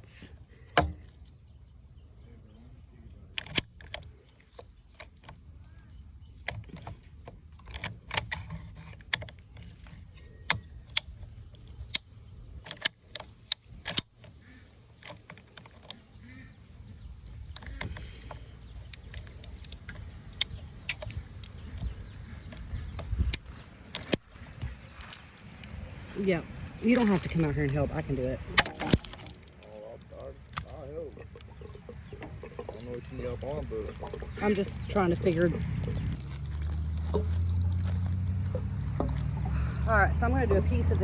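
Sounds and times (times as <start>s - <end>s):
handling sounds: 17.3s - 32.7s.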